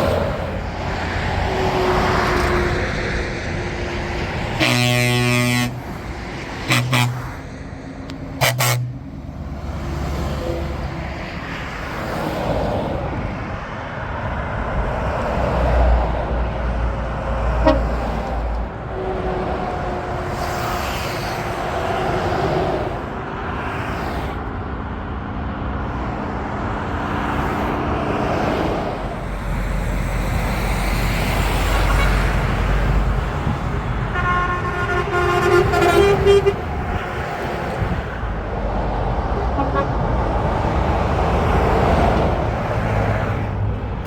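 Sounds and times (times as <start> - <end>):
motorway traffic passing: 0.0 - 44.0
truck air horn blast: 4.4 - 7.5, 8.3 - 9.2, 17.5 - 18.3, 31.6 - 33.1, 34.0 - 37.0, 39.4 - 40.1.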